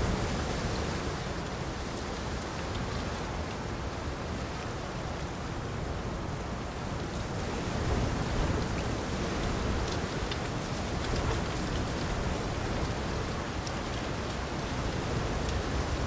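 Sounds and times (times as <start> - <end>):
steady rain hiss: 0.0 - 16.0.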